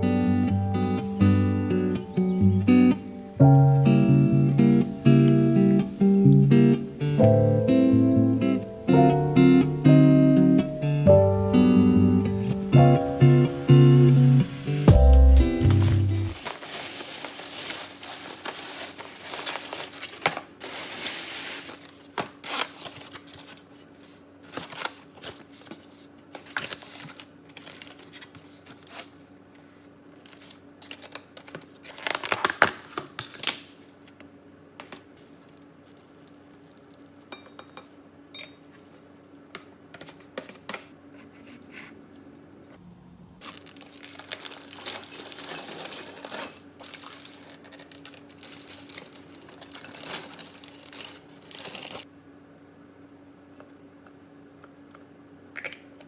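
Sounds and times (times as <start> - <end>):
faint steady hum: 0.0 - 32.2
packaging crinkling and rustling: 15.7 - 34.2, 43.4 - 52.1.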